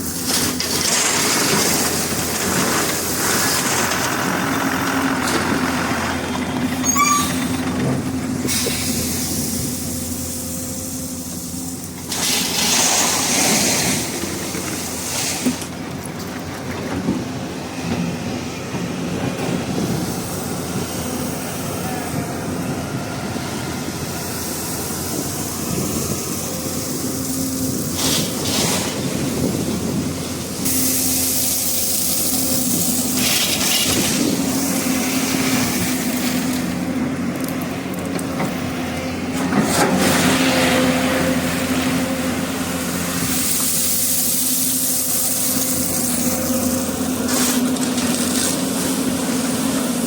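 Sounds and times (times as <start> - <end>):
excavator diesel engine running: 0.0 - 50.0.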